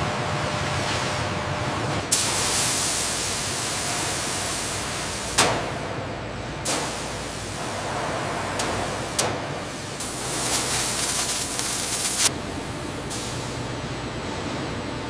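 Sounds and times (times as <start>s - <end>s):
steady hissing noise: 6.7s - 15.0s.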